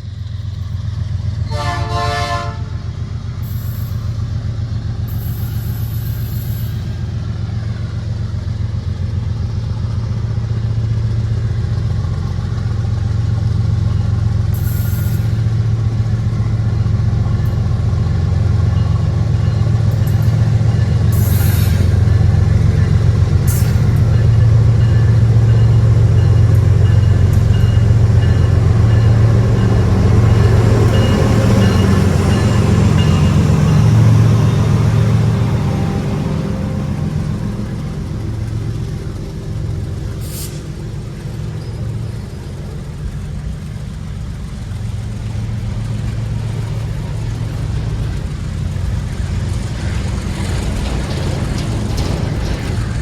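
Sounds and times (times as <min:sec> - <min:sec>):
diesel locomotive engine roaring: 0:00.0 - 0:53.0
locomotive horn blast: 0:01.4 - 0:02.8.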